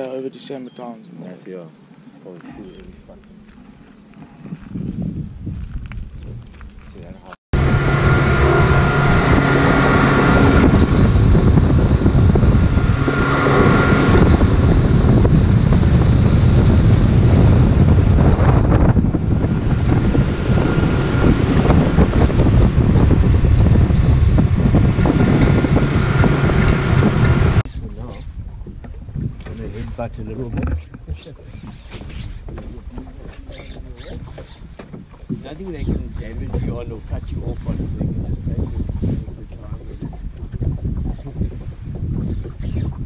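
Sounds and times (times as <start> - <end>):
wind rushing over microphone: 4.3 - 43.0
boat engine running: 7.0 - 43.0.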